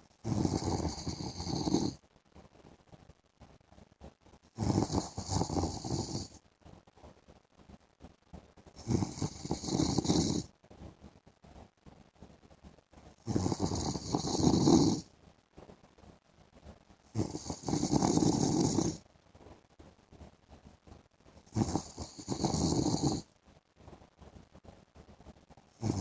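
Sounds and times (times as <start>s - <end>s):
quiet breathing: 0.0s - 2.0s, 4.6s - 6.4s, 8.8s - 10.8s, 13.3s - 15.1s, 17.1s - 19.0s, 21.4s - 23.9s, 25.8s - 26.0s
man snoring: 0.2s - 2.0s, 4.6s - 6.4s, 8.8s - 10.5s, 13.3s - 15.0s, 17.2s - 19.0s, 21.6s - 23.2s, 25.8s - 26.0s.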